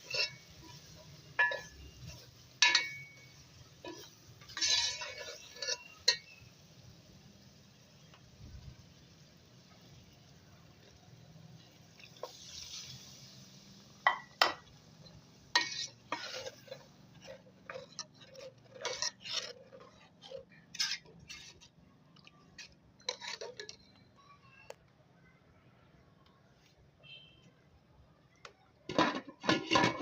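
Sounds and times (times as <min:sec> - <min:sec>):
spoon clinking and scraping a pot: 0:00.0 - 0:06.7, 0:11.6 - 0:13.4, 0:14.0 - 0:24.2, 0:28.9 - 0:30.0.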